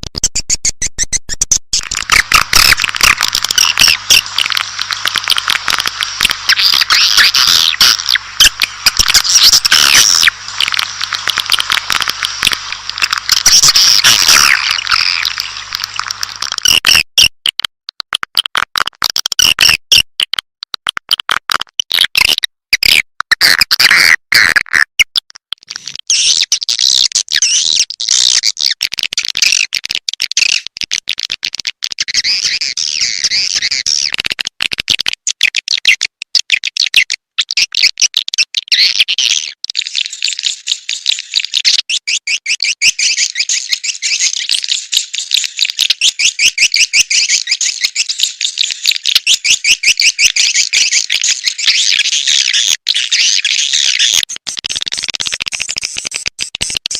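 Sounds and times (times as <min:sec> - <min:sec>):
quick clicks: 0:00.0 - 0:18.5
high rapid bird chirping: 0:00.2 - 0:16.3, 0:39.8 - 0:54.2
low hum: 0:01.8 - 0:16.4.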